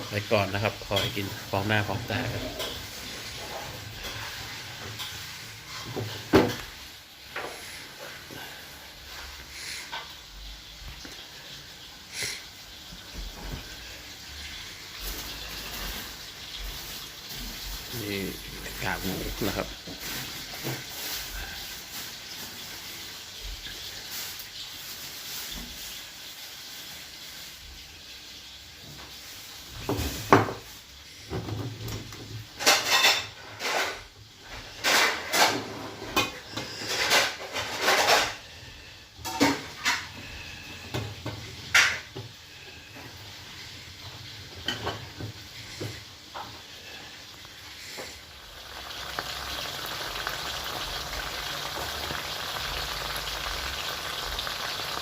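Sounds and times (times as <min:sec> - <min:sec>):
frying sizzle: 0:00.0 - 0:55.0
dishes and utensils clattering: 0:02.0 - 0:10.2, 0:29.7 - 0:38.6, 0:39.2 - 0:43.1, 0:44.0 - 0:47.0.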